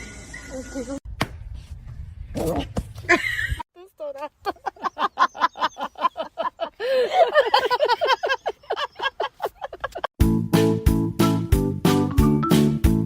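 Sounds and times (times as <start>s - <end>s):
keyboard music: 10.2s - 13.0s.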